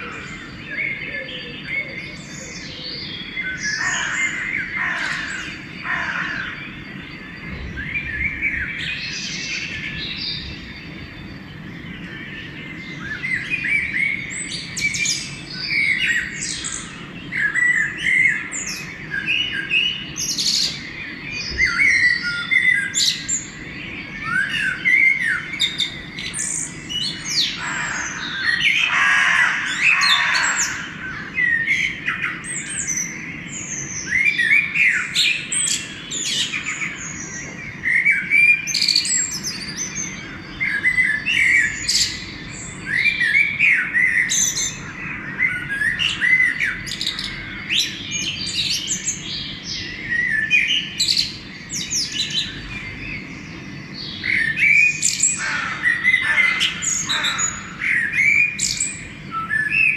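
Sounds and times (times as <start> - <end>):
low background hum: 0.0 - 59.9
songbirds chirping and trilling: 0.0 - 59.9
harsh squawking bird call: 3.5 - 6.7, 27.1 - 32.4, 54.2 - 59.9.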